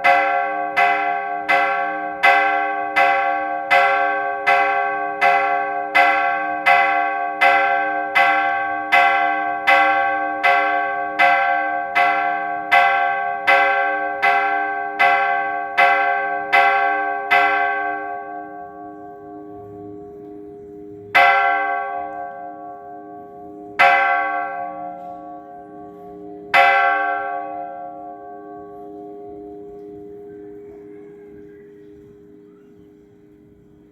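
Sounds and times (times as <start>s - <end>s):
church bell ringing: 0.0s - 33.9s.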